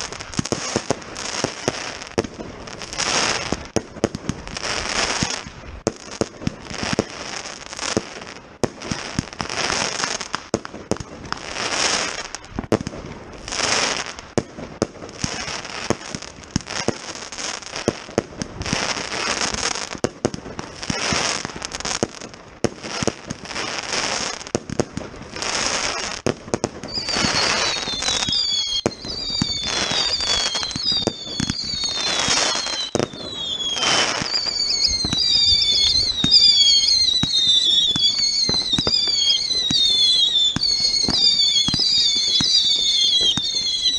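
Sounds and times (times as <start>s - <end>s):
firework hissing crackling bursts: 0.0s - 43.9s
descending firework whistles: 10.9s - 20.0s, 25.3s - 43.9s.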